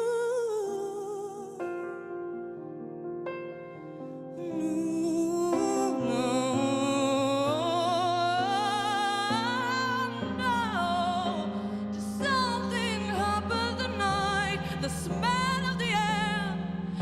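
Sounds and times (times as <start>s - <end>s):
woman singing wordless melody: 0.0s - 2.4s, 4.3s - 17.0s.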